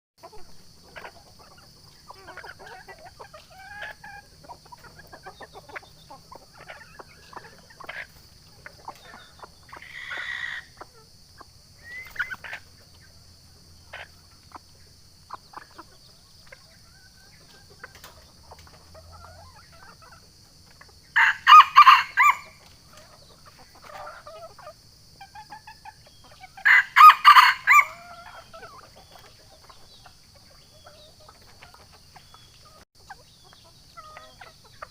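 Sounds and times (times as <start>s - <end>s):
soft clucks and short calls: 0.2s - 34.9s
rooster crowing: 21.2s - 22.6s, 26.6s - 28.4s.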